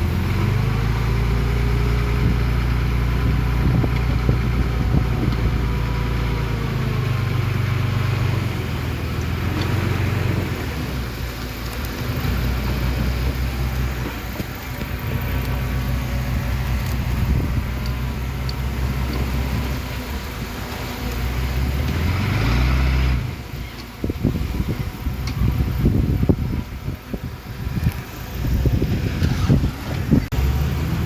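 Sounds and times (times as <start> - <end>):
heavy machinery diesel engine: 0.0 - 31.0.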